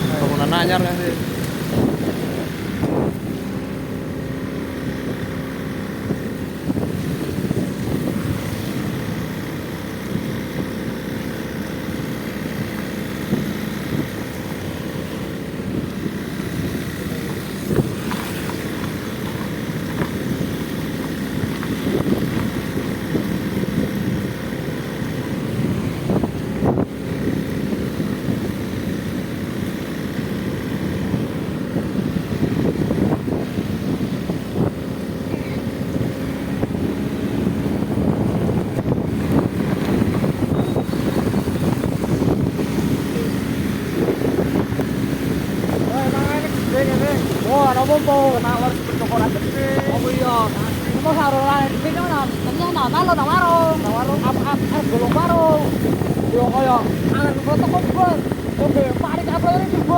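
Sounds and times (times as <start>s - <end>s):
wind buffeting microphone: 0.0s - 59.9s
heavy rain falling: 39.2s - 55.7s.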